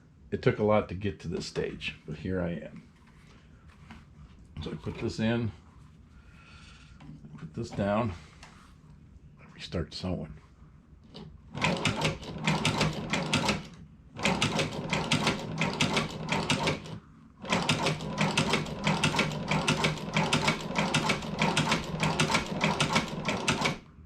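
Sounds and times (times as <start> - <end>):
sewing machine clicking: 11.1 - 23.9.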